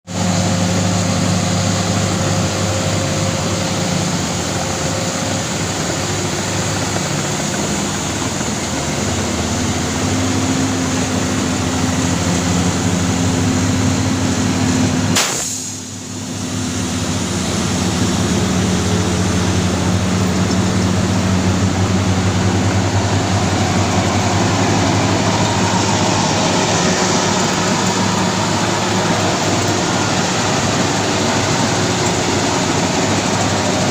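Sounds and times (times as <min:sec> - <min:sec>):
heavy diesel engines: 0:00.1 - 0:33.9
sharp click: 0:15.1 - 0:15.6.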